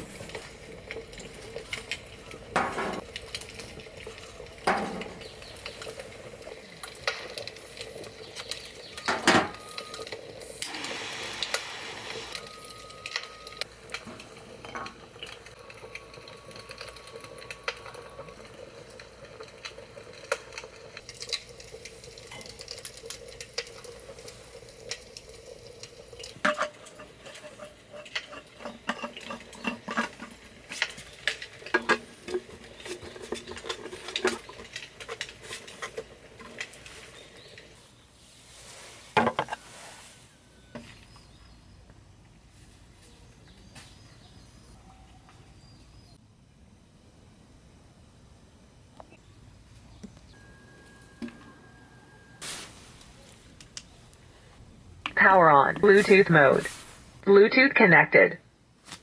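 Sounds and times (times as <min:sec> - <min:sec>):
dishes and pots clattering: 0:02.5 - 0:03.5, 0:04.6 - 0:06.0, 0:08.4 - 0:09.9, 0:21.2 - 0:37.2.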